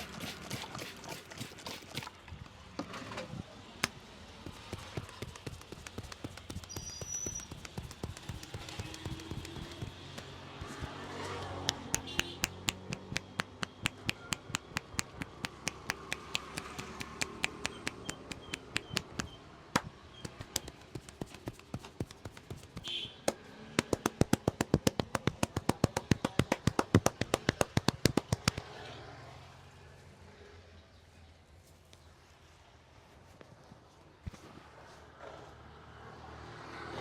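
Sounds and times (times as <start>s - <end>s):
hands clapping on head: 3.8s - 28.7s.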